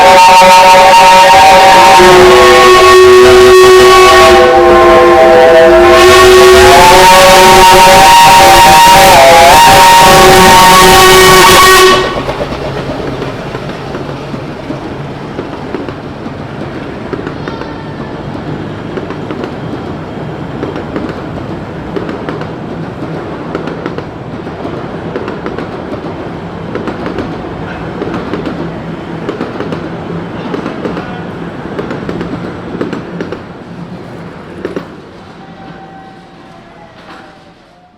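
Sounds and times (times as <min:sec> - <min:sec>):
steam locomotive whistle: 0:00.0 - 0:14.4, 0:35.2 - 0:37.9
train running noise: 0:00.0 - 0:37.9.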